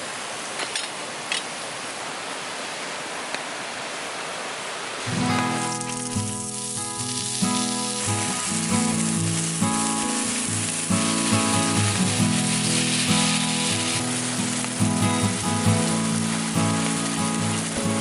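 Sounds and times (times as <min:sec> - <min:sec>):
heavy rain: 0:00.0 - 0:18.0
background music chords: 0:05.1 - 0:18.0.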